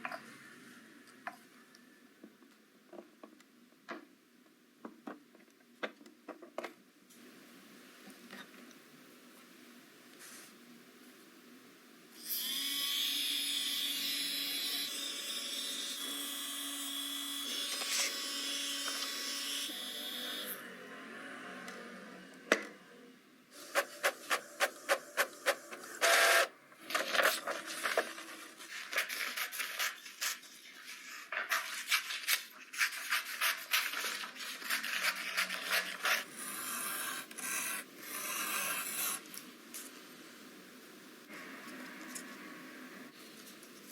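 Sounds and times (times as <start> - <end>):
scraping and rubbing of craft work: 17.4 - 19.7, 23.6 - 40.0
tiny motor and fan whirring: 23.6 - 29.0.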